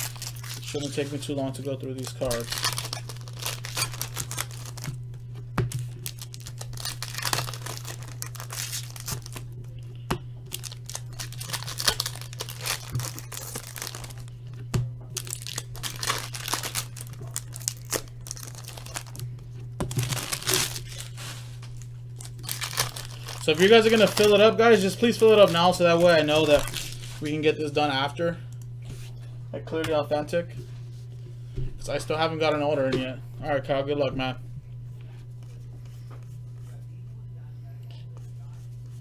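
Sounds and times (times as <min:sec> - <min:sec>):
foil wrappers crinkling: 0:00.0 - 0:27.5
steady low hum: 0:00.0 - 0:39.0.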